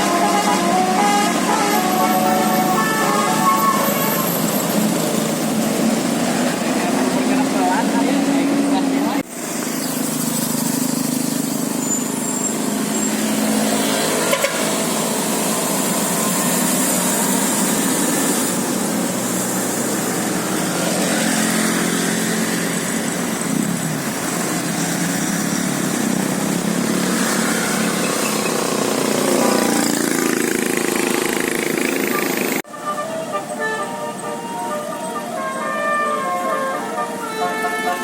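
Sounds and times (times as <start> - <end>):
street traffic noise: 0.0 - 38.0
vehicle engines running: 0.0 - 38.0.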